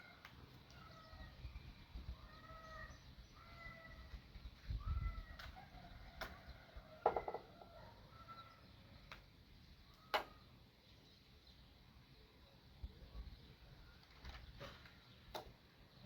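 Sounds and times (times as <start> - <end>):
birds calling: 0.0 - 16.0
rattle of knocks: 7.0 - 7.5.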